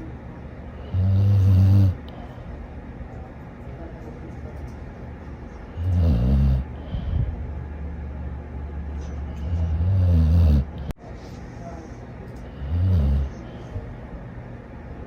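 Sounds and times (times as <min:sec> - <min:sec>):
dog snoring: 0:00.9 - 0:02.1, 0:05.8 - 0:07.0, 0:09.4 - 0:10.9, 0:12.5 - 0:13.5
dog breathing: 0:05.6 - 0:07.6, 0:09.0 - 0:13.9.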